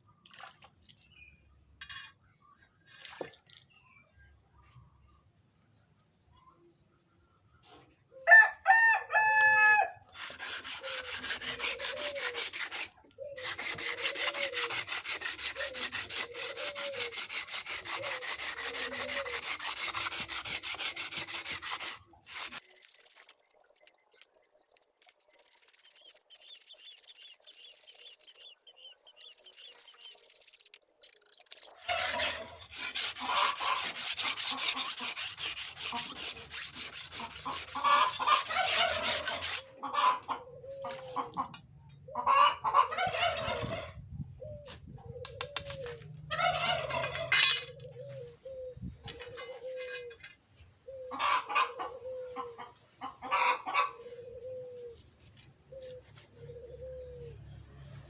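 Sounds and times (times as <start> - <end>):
sanding strokes on saw blade: 10.1 - 23.8, 24.7 - 39.9
chicken clucking: 37.4 - 44.0, 45.0 - 50.1, 50.9 - 55.0.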